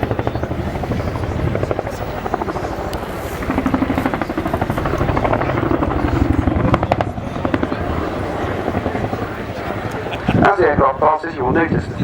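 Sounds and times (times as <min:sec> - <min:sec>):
helicopter rotors thumping: 0:00.0 - 0:11.9
helicopter engine noise: 0:00.0 - 0:12.0.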